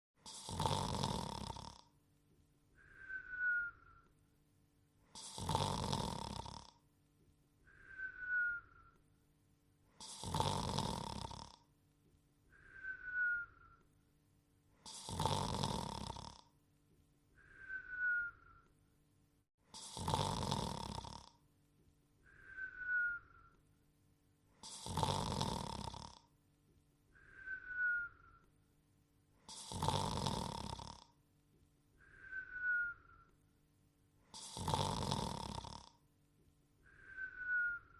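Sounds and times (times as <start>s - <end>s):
cartoon dog snoring: 0.2s - 1.9s, 5.1s - 6.8s, 9.9s - 11.7s, 14.8s - 16.6s, 19.6s - 21.4s, 24.6s - 26.3s, 29.4s - 31.2s, 34.2s - 36.0s
short falling whistle: 36.9s - 37.9s.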